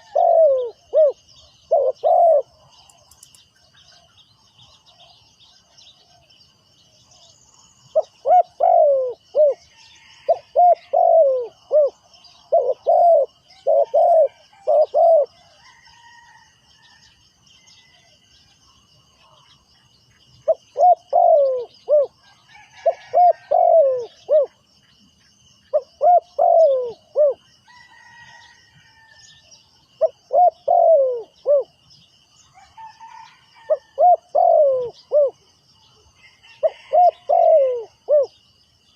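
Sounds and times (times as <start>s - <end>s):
dove cooing: 0.0s - 3.2s, 7.9s - 15.8s, 20.4s - 24.6s, 25.7s - 28.3s, 30.0s - 31.8s, 32.6s - 35.4s, 36.5s - 38.4s.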